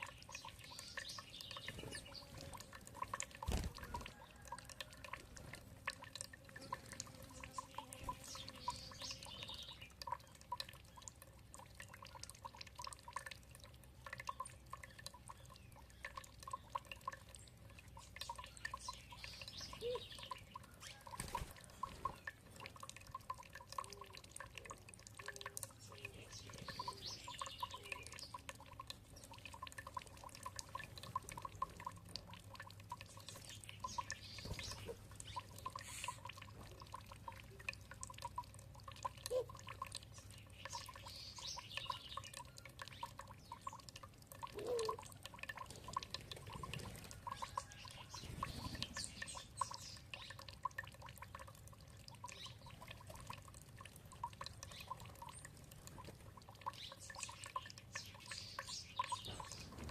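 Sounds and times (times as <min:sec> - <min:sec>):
birds chirping: 0:00.0 - 0:04.5, 0:07.3 - 0:11.1, 0:14.3 - 0:21.1, 0:25.2 - 0:28.5, 0:33.0 - 0:36.5, 0:47.2 - 0:50.5, 0:56.6 - 0:59.9
water trickling and dripping: 0:00.0 - 0:59.9.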